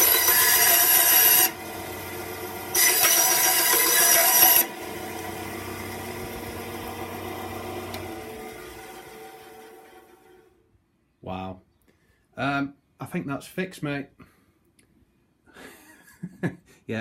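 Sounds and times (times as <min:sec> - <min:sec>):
bandsaw cutting wood: 0:00.0 - 0:10.6.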